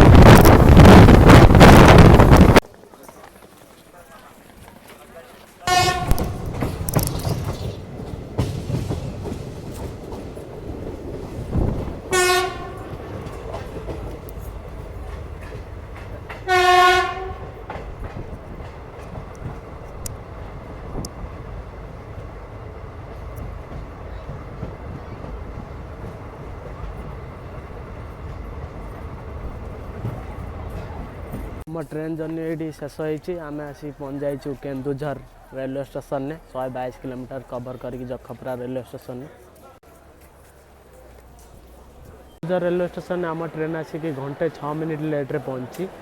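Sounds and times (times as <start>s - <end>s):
train rumbling over rail joints: 0.0s - 2.6s, 5.7s - 32.6s, 39.6s - 46.0s
train horn blasts: 5.7s - 6.6s, 12.1s - 13.1s, 16.4s - 17.7s.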